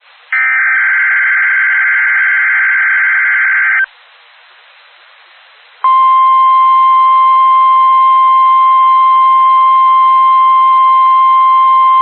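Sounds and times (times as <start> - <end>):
faint radio hiss: 0.0 - 12.0.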